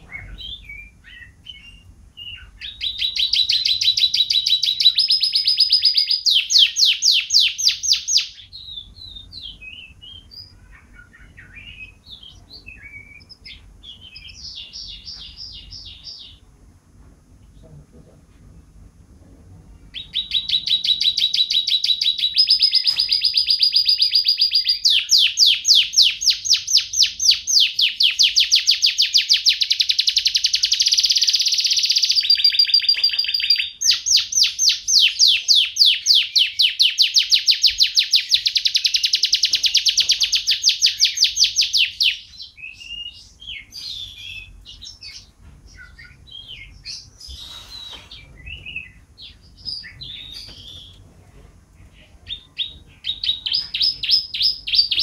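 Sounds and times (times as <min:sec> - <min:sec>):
canary trilling: 0:00.0 - 0:16.5, 0:19.9 - 0:51.0, 0:52.0 - 0:55.0
canary chirps: 0:00.0 - 0:16.6, 0:19.8 - 0:51.0, 0:51.8 - 0:55.0.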